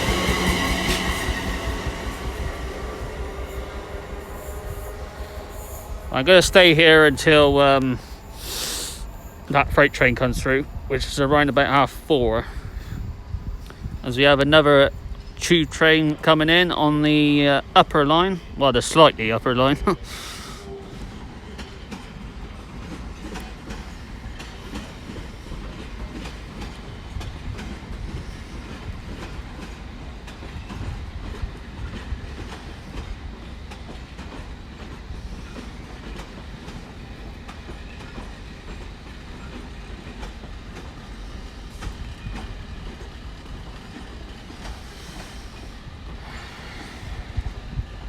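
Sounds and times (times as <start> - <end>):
train rumbling: 0.0 - 48.0
wheels clicking over rail joints: 18.8 - 48.0.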